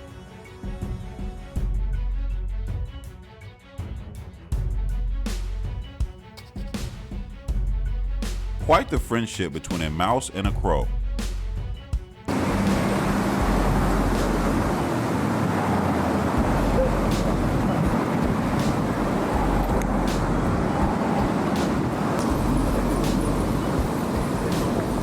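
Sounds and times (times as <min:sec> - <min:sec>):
loud rushing noise: 0:12.3 - 0:25.0.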